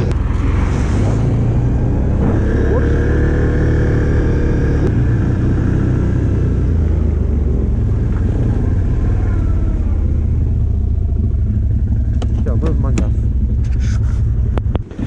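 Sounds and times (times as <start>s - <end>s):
wind noise: 0.0s - 5.4s, 12.2s - 15.0s
quad bike engine rumbling: 0.0s - 15.0s
road noise: 0.0s - 15.0s.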